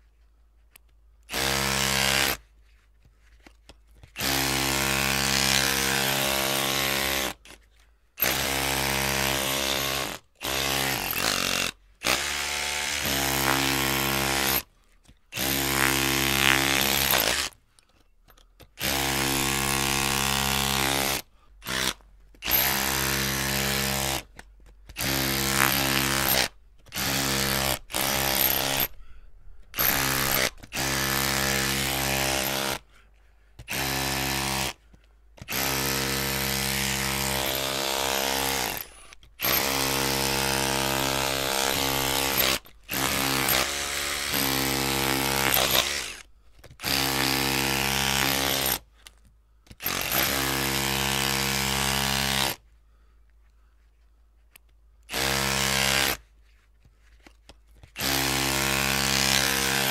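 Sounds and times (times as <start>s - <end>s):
electric drill motor whining: 25.0s - 29.0s, 29.8s - 32.8s, 35.5s - 48.8s.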